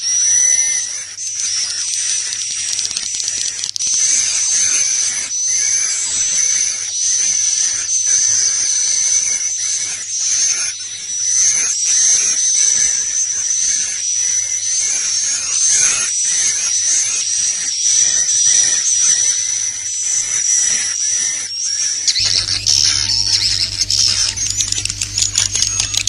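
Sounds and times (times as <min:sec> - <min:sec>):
steady high whistling tone: 0:22.1 - 0:26.0
swiftlets twittering and chattering: 0:22.1 - 0:26.0.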